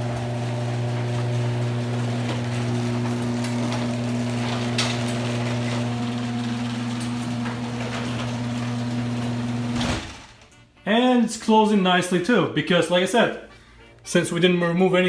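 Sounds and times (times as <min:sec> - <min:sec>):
garage door opener motor hum: 0:00.0 - 0:10.6.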